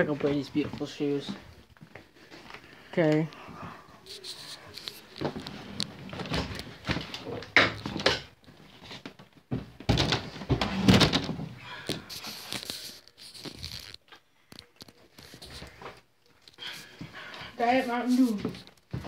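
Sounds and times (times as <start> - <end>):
thumps and rustling handling noise: 4.0 - 17.2.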